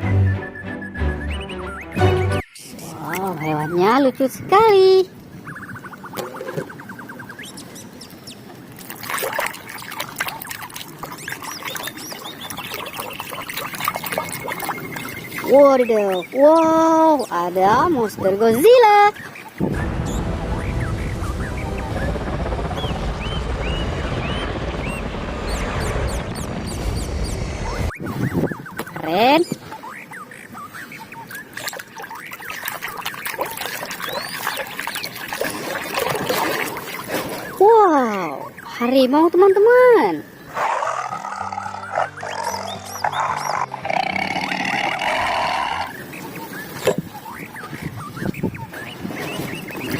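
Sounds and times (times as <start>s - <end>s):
water splashing and trickling: 2.2s - 21.4s, 27.9s - 40.3s.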